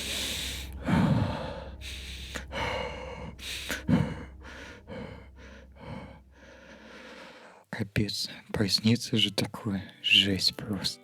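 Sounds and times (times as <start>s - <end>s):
person panting and gasping: 0.0s - 7.6s.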